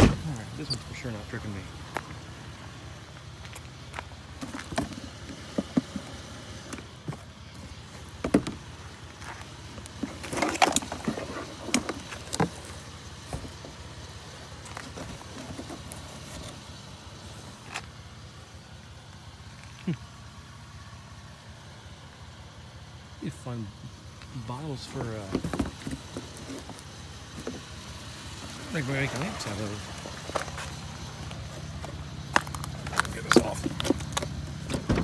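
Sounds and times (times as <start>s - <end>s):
junk knocking and clattering: 0.0s - 0.6s, 4.3s - 13.9s, 24.8s - 35.0s
vehicle engine idling: 0.0s - 35.0s.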